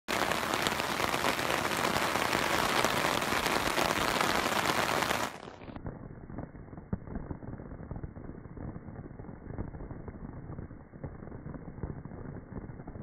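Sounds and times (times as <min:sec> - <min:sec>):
heavy rain pattering: 0:00.1 - 0:13.0.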